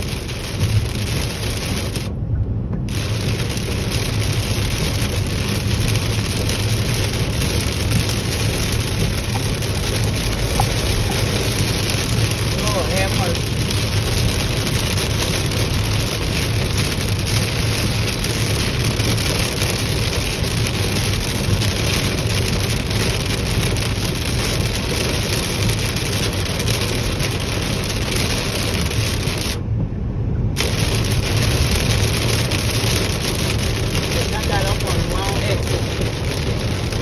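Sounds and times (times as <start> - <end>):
heavy rain on a car: 0.0 - 37.0
low road and engine hum: 0.0 - 37.0.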